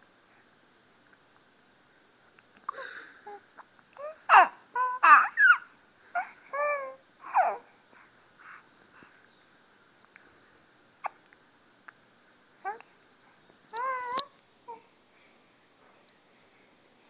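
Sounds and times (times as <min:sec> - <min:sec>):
baby cooing: 0:02.8 - 0:07.7, 0:12.6 - 0:12.9, 0:13.7 - 0:14.9.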